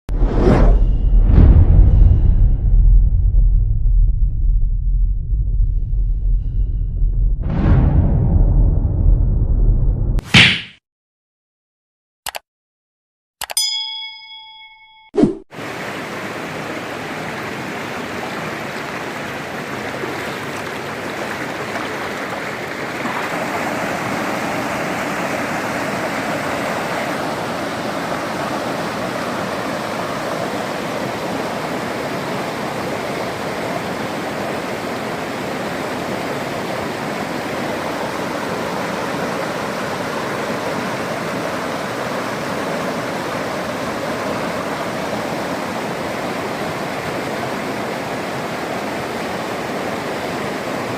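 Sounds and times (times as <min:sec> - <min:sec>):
waterfall rushing: 0:15.6 - 0:50.9.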